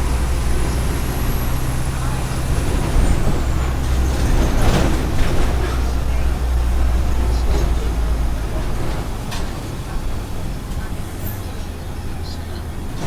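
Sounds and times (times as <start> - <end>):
bus diesel engine running: 0.0 - 13.0.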